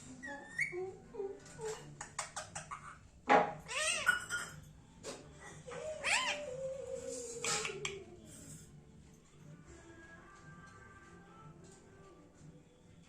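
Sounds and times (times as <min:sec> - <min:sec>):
parrot squawking: 0:03.6 - 0:04.6, 0:05.7 - 0:08.0.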